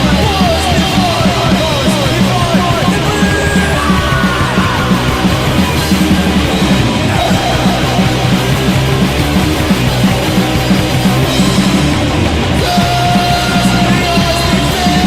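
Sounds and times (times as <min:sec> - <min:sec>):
person yelling vocals: 0:00.0 - 0:05.4
bass guitar: 0:00.0 - 0:15.0
distorted electric guitar: 0:00.0 - 0:15.0
drums pounding fast beat: 0:00.0 - 0:15.0.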